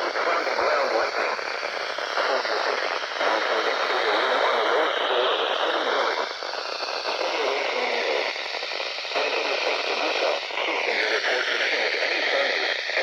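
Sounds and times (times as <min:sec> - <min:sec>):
radio static hiss: 0:00.0 - 0:13.0.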